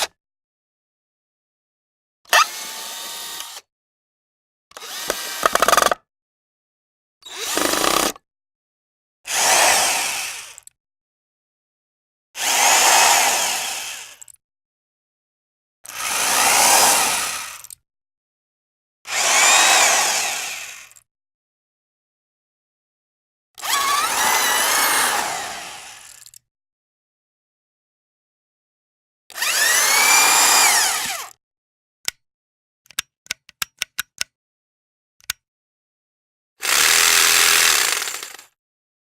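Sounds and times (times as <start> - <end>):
power tool whine: 29.4 - 31.4, 36.6 - 38.5.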